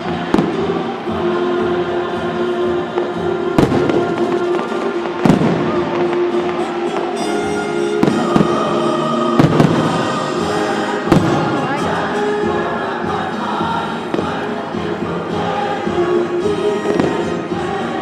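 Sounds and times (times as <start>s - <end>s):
fireworks booming: 0.0s - 1.1s, 2.9s - 12.2s, 16.8s - 17.5s
loud music with sustained tones: 0.0s - 18.0s.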